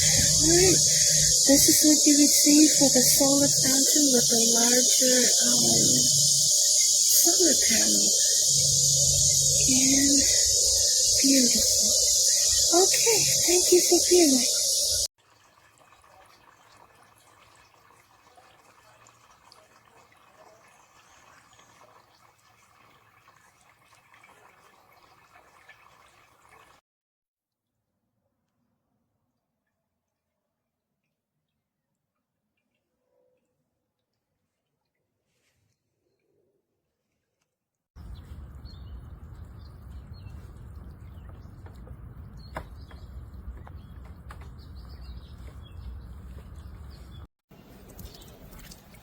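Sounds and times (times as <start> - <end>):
small birds chirping: 0.0 - 15.1, 38.0 - 48.8
fountain water splashing: 0.0 - 26.8
low outdoor rumble: 38.0 - 47.2.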